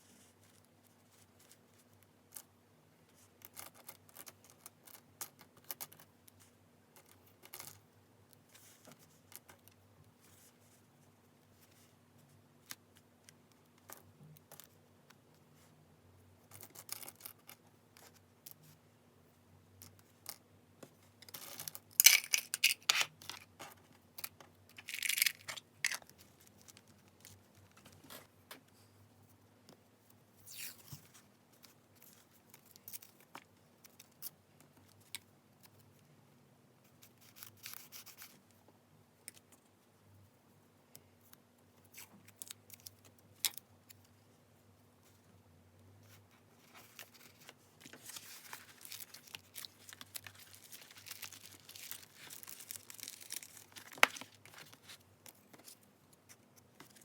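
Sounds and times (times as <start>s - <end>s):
paper tapping and rustling: 46.9s - 55.7s.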